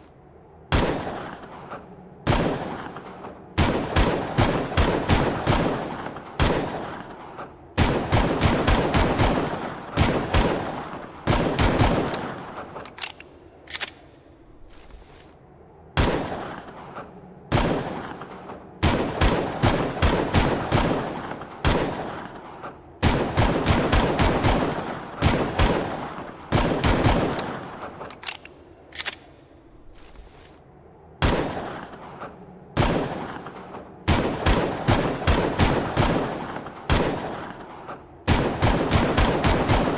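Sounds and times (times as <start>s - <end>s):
pistol firing in bursts: 0.6s - 14.4s, 15.9s - 30.1s, 31.1s - 39.9s.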